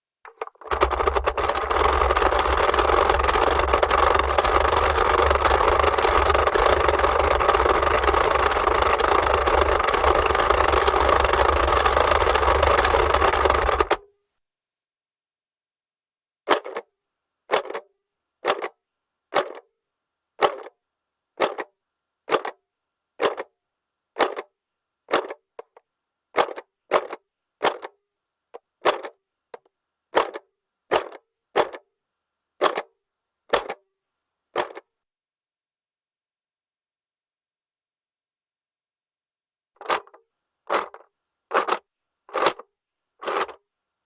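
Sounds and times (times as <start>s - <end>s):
plastic toy mechanism clicking: 0.3s - 14.0s, 16.5s - 16.9s, 17.5s - 19.7s, 20.4s - 20.8s, 21.4s - 21.7s, 22.3s - 22.6s, 23.2s - 23.5s, 24.2s - 24.5s, 25.1s - 25.8s, 26.4s - 28.0s, 28.6s - 31.9s, 32.6s - 32.9s, 33.5s - 33.8s, 34.6s - 34.9s, 39.8s - 43.6s.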